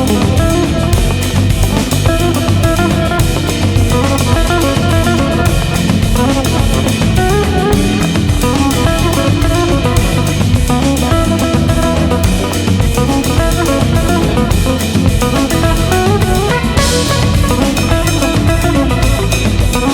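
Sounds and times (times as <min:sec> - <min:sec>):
band music with drums and guitar: 0:00.0 - 0:19.9.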